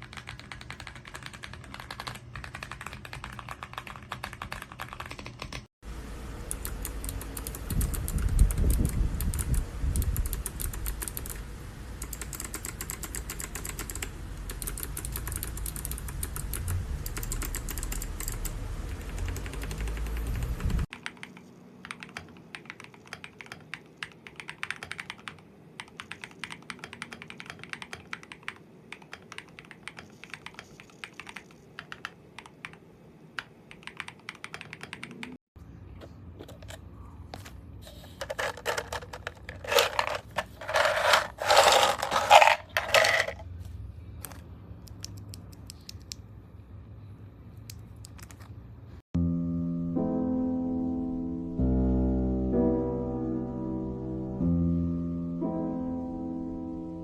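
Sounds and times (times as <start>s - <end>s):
mechanical keyboard typing: 0.0s - 5.7s, 6.4s - 11.4s, 12.0s - 32.8s, 33.4s - 35.4s.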